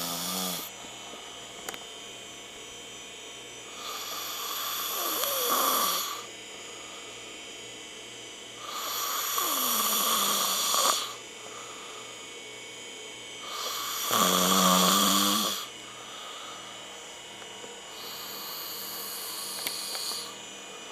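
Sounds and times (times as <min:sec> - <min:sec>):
person snoring: 0:00.0 - 0:00.7, 0:03.7 - 0:06.3, 0:08.6 - 0:11.2, 0:13.4 - 0:16.4, 0:17.9 - 0:20.4.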